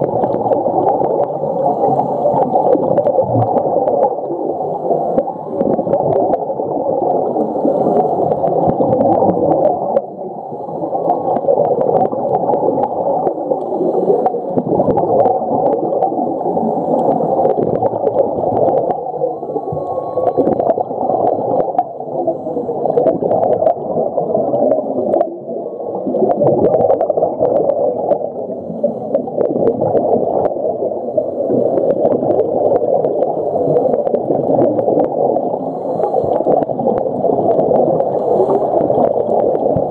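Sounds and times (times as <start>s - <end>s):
underwater gurgling and rushing: 0.0s - 39.9s.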